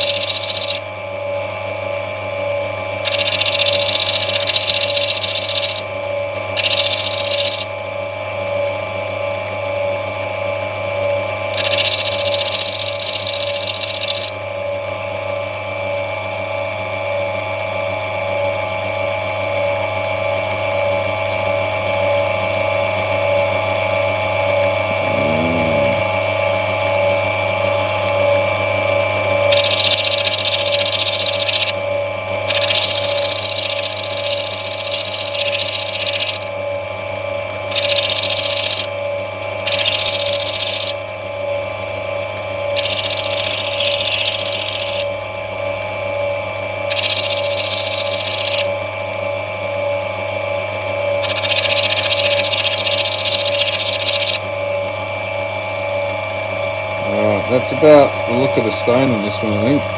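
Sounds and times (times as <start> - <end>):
stone hissing against grinding wheel: 0.0 - 0.8, 3.1 - 5.8, 6.6 - 7.6, 11.6 - 14.3, 29.5 - 31.7, 32.5 - 36.5, 37.7 - 38.9, 39.7 - 40.9, 42.8 - 45.0, 46.9 - 48.7, 51.2 - 54.4
grinding machine hum: 24.4 - 27.0, 46.9 - 48.7, 51.2 - 54.5, 57.0 - 59.9.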